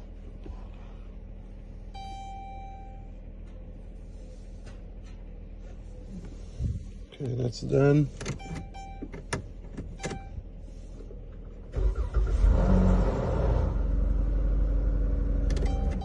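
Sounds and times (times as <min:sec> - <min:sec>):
car engine cranking and idling: 0:00.0 - 0:16.0
short electronic beeps: 0:02.0 - 0:03.1, 0:08.4 - 0:09.1.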